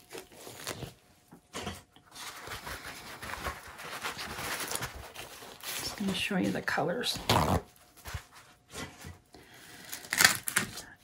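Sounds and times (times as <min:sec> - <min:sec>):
rustling: 0:02.1 - 0:08.6.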